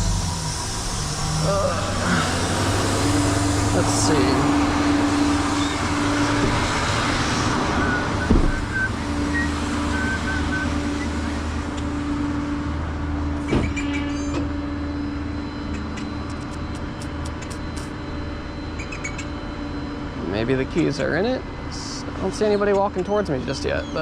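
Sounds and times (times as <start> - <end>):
truck engine idling: 0.0 - 13.6.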